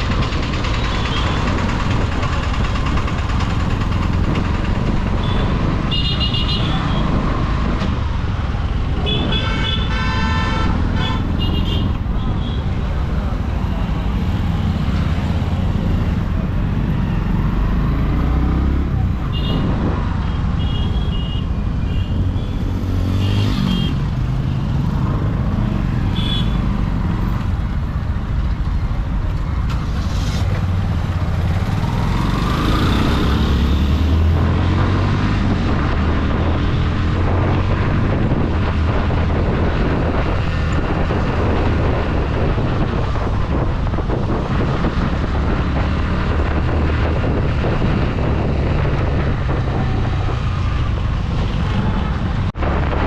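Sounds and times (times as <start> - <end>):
motorcycle engine running: 0.0 - 7.0
road noise: 0.0 - 53.0.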